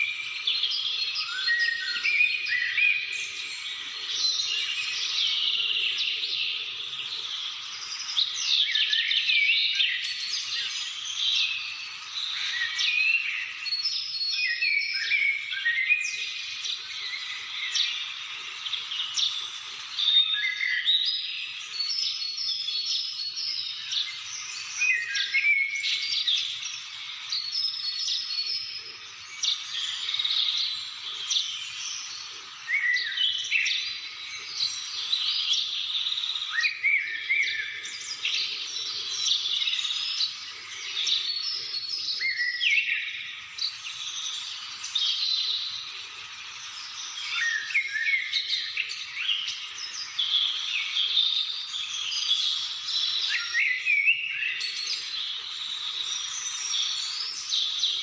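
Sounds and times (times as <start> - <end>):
birds chirping and whistling: 0.0 - 58.0.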